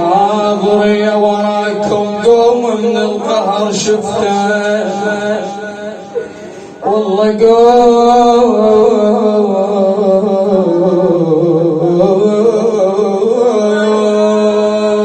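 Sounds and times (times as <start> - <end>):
man chanting a lament: 0.0 - 15.0.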